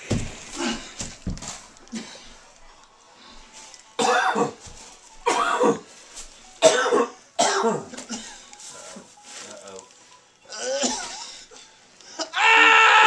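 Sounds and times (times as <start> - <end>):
person coughing outbursts: 4.0 - 4.6, 5.2 - 5.8, 6.6 - 8.4, 10.5 - 11.4.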